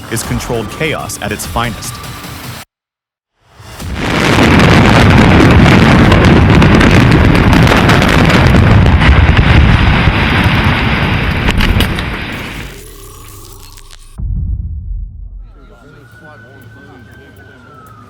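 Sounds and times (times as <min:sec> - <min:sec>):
building collapsing rumble: 0:03.6 - 0:16.0
sharp cracks: 0:03.8 - 0:14.2.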